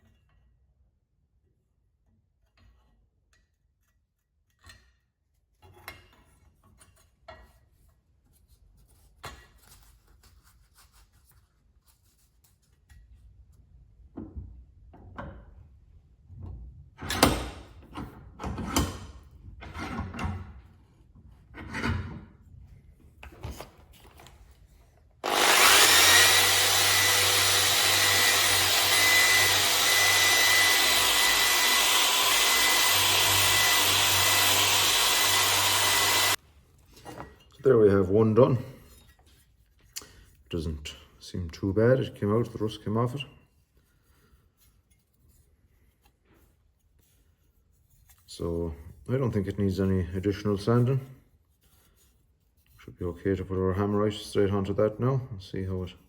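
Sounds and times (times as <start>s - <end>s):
drill with wire brush on metal: 25.2s - 36.4s.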